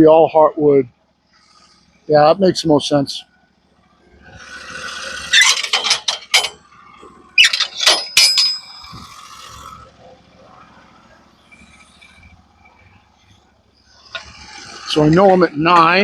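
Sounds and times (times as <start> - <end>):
metal clanks and rattles: 4.6 - 9.8, 14.0 - 16.0
short ringing metal clink: 7.6 - 9.0.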